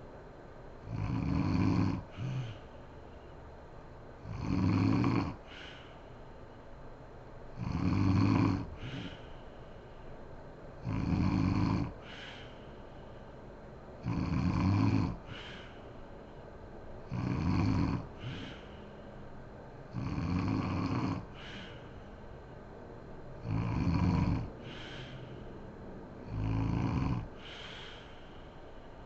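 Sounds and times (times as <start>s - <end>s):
woman snoring: 0.9s - 2.7s, 4.2s - 5.9s, 7.6s - 9.3s, 10.8s - 12.5s, 14.0s - 15.8s, 17.1s - 18.7s, 19.9s - 21.9s, 23.4s - 25.2s, 26.2s - 28.2s
soft breath: 2.0s - 4.0s, 5.3s - 7.2s, 8.4s - 14.0s, 14.8s - 29.0s.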